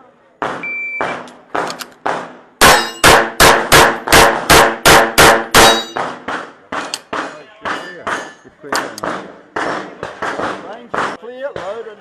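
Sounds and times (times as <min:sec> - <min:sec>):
pistol shots: 0:00.4 - 0:11.2
shot timer beep: 0:00.6 - 0:01.1.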